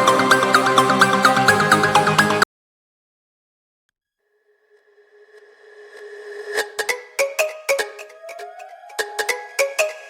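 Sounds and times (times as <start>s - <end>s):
electronic music with bell-like notes: 0.0s - 2.4s, 6.6s - 10.0s
tone gliding upward: 5.1s - 10.0s.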